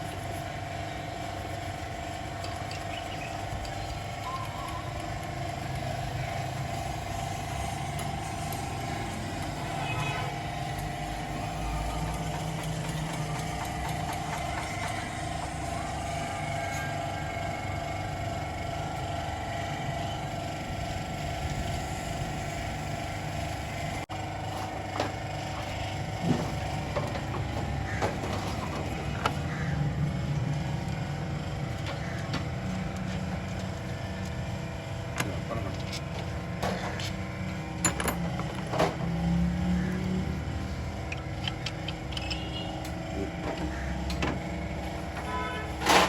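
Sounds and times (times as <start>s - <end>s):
engine running: 0.0s - 46.0s
hand tools clicking and knocking: 12.0s - 15.6s, 35.2s - 39.1s, 41.0s - 42.7s.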